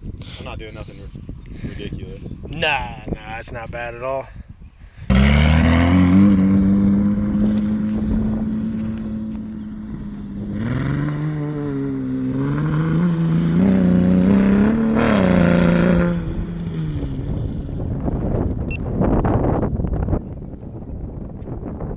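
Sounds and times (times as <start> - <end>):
dune buggy engine running hard: 5.1 - 21.9.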